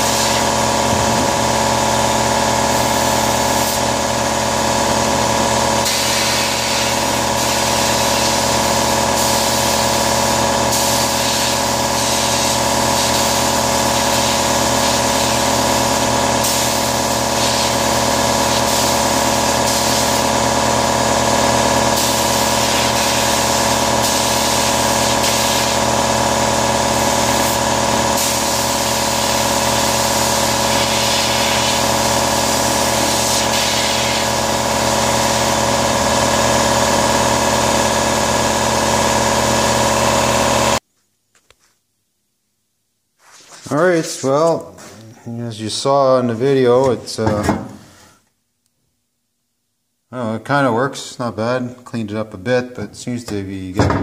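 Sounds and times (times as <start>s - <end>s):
air compressor running: 0.0s - 40.8s.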